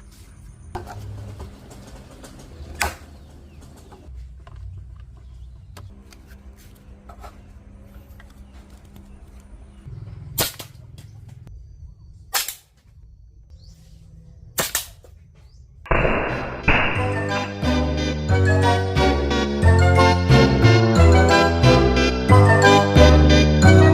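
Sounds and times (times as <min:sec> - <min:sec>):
blowgun firing pops: 0:12.3 - 0:12.7, 0:14.6 - 0:15.0, 0:15.9 - 0:17.1
music: 0:16.3 - 0:23.9.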